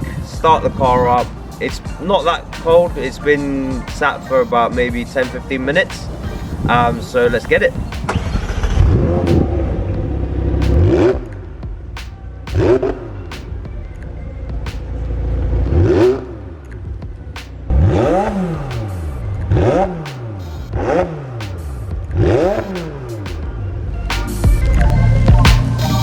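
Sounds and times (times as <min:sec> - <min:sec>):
sports car engine revving: 0:00.0 - 0:13.5, 0:14.7 - 0:23.9.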